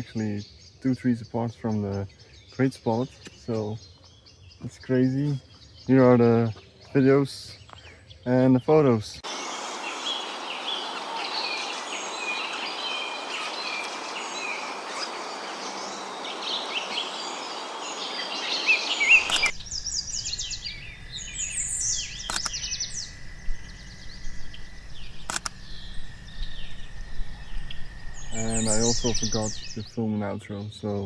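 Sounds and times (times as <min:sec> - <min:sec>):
background hiss: 0:00.0 - 0:31.0
birds chirping: 0:00.0 - 0:31.0
short clicks: 0:19.2 - 0:19.5, 0:22.2 - 0:22.6, 0:25.2 - 0:25.6.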